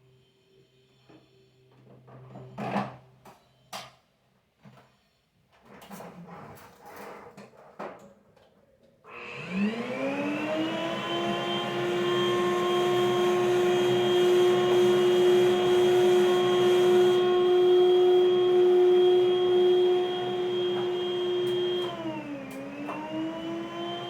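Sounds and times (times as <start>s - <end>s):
vacuum cleaner motor running: 9.1s - 24.0s.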